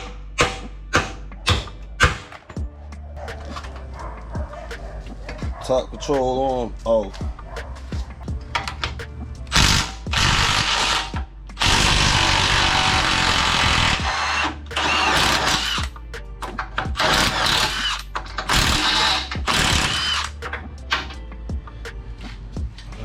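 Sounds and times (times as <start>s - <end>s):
power tool bursts: 9.6s - 15.8s, 17.0s - 20.3s.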